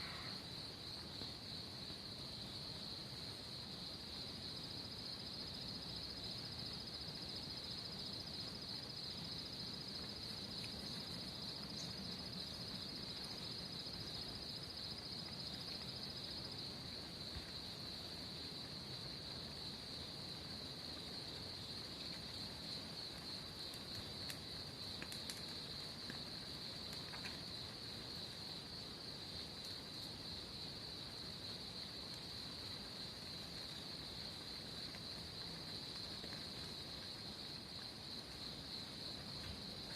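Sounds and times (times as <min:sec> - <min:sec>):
insects trilling: 0:00.0 - 0:39.9
faint ticks: 0:10.0 - 0:12.0, 0:22.0 - 0:28.4, 0:29.6 - 0:30.2.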